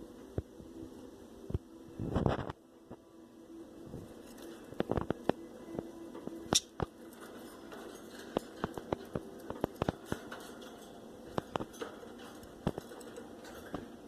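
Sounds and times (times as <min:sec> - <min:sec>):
birds pecking at seed: 0:04.0 - 0:14.0.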